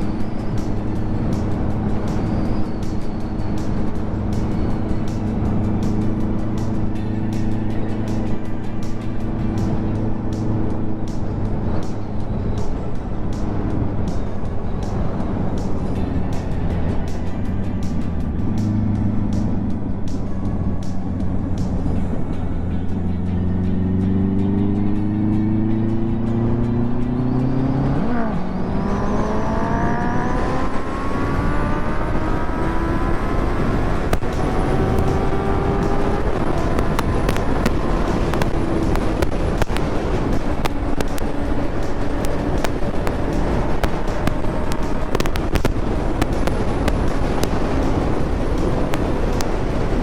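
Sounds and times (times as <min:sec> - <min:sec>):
motorcycle engine accelerating: 0:00.0 - 0:50.0
wind noise: 0:00.0 - 0:50.0
crackling clicks on microphone: 0:33.8 - 0:50.0.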